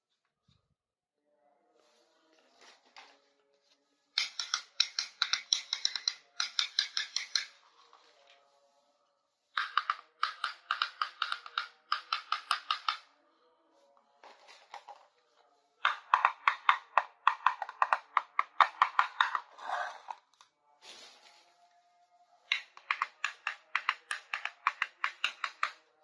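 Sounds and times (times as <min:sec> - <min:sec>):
faint background music: 0:00.1 - 0:26.0
plastic toy parts clicking: 0:04.2 - 0:07.6, 0:09.6 - 0:13.0, 0:15.8 - 0:20.5, 0:22.5 - 0:25.8.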